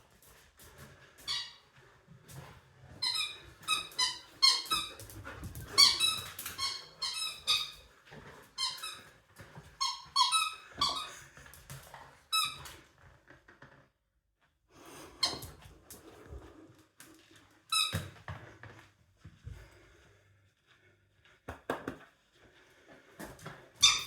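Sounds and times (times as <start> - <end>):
squeaky toy squeaking: 3.0 - 4.9, 5.8 - 7.7, 9.8 - 11.1.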